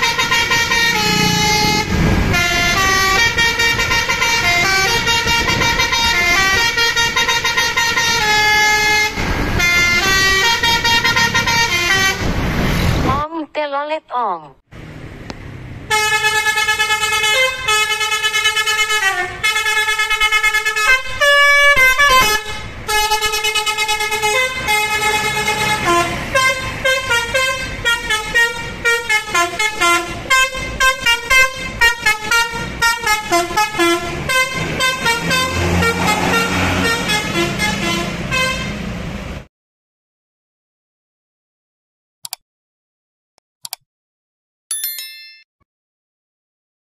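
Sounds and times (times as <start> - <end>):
bus musical air horn: 0.0 - 12.4, 15.9 - 39.1.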